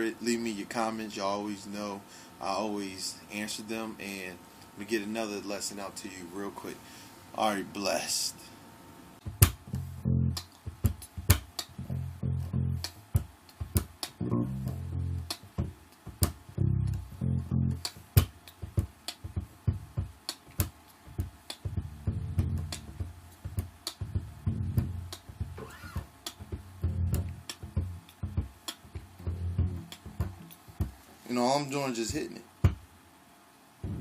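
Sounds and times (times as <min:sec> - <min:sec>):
electric bass played percussively: 0:09.2 - 0:31.0, 0:32.1 - 0:32.9.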